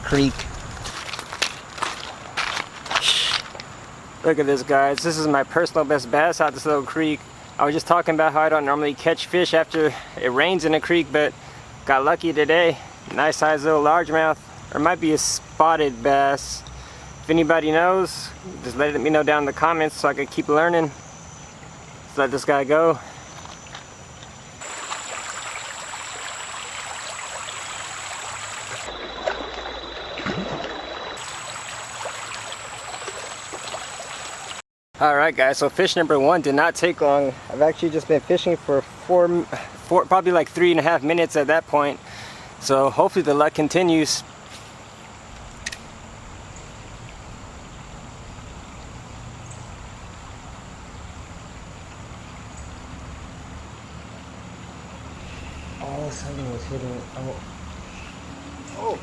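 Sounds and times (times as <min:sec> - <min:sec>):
creek water running: 0:00.0 - 0:59.0
creek water rushing: 0:24.6 - 0:34.6, 0:44.0 - 0:59.0.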